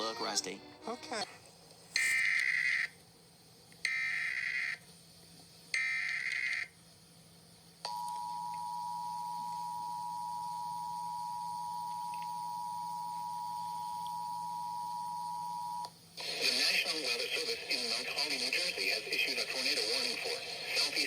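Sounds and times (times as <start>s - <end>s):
data burst tones: 2.0s - 2.9s.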